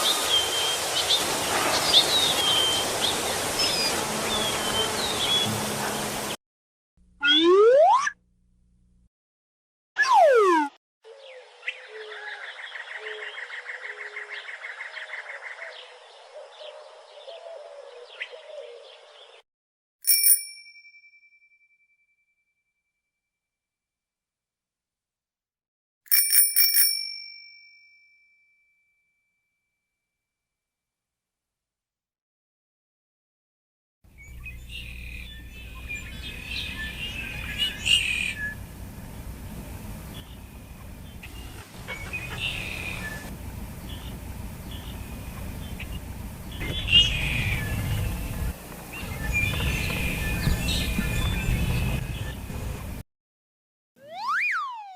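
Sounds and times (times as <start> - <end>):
birds chirping: 0.0 - 6.4, 34.2 - 52.8
bicycle bell ringing: 20.0 - 21.5, 26.1 - 28.3
low background rumble: 34.4 - 53.0
fast bird trill: 46.6 - 48.3.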